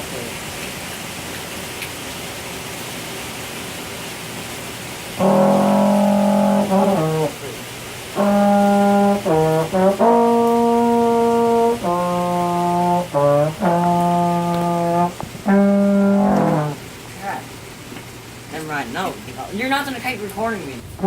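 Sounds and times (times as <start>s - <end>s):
solo low brass instrument: 5.1s - 17.1s.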